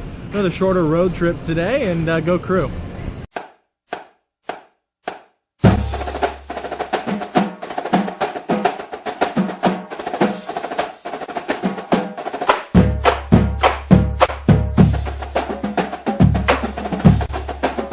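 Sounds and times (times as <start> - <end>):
fast dense drum hits: 5.6 - 17.9.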